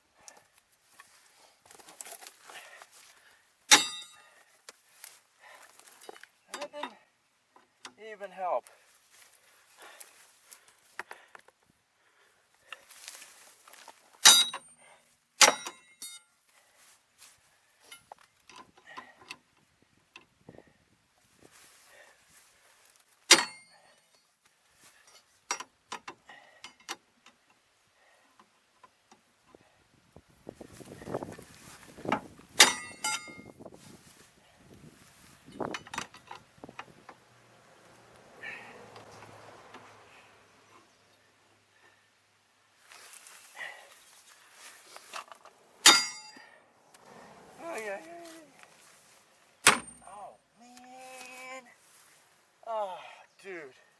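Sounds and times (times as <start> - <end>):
metal-on-metal strikes: 3.7 - 4.2, 14.2 - 14.7, 15.4 - 16.2, 23.3 - 23.7, 32.6 - 33.4, 45.8 - 46.5, 49.6 - 50.1
sharp ringing metal clangs: 3.7 - 4.3, 14.2 - 14.8, 15.4 - 16.3, 23.3 - 23.9, 32.6 - 33.5, 45.8 - 46.6, 49.6 - 50.2
small metal clinks: 3.7 - 4.4, 14.2 - 16.4, 32.6 - 33.5, 45.2 - 46.6.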